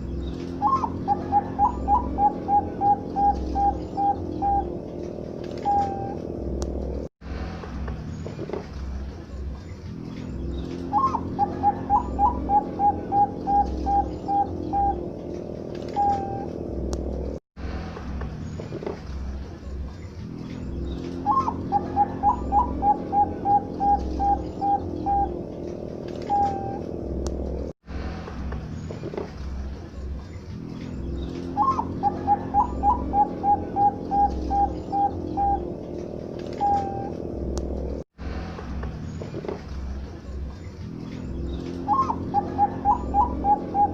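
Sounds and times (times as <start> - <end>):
dove cooing: 0.6 - 6.2, 10.9 - 16.6, 21.2 - 26.9, 31.5 - 37.2, 41.8 - 43.9.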